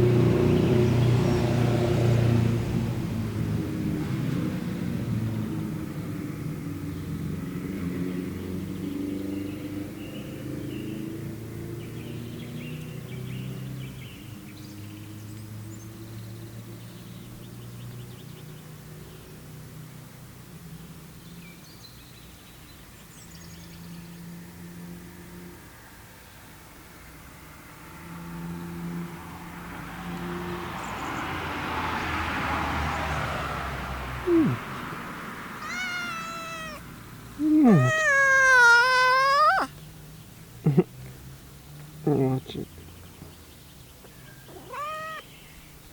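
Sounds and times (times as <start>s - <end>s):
cat yawning slowed down: 34.2s - 34.8s, 35.6s - 36.8s, 37.4s - 39.7s.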